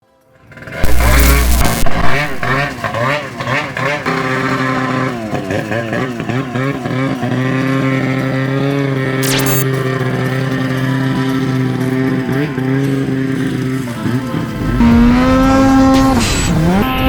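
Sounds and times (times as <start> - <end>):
snowmobile engine revving: 0.5 - 17.0.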